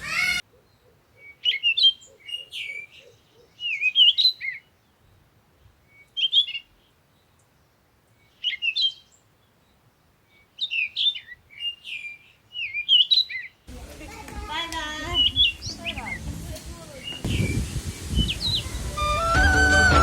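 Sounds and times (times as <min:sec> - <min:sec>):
songbird singing high whistled notes: 0:01.2 - 0:04.7, 0:10.3 - 0:13.6, 0:15.1 - 0:16.3, 0:17.0 - 0:20.0.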